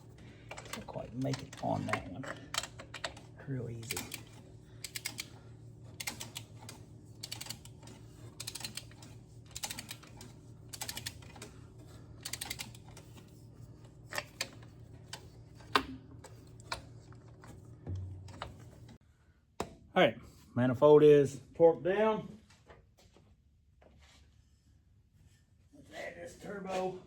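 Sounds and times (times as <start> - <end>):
ratchet wrench clicking: 3.9 - 5.3, 7.2 - 7.7, 8.4 - 11.5, 12.2 - 12.8.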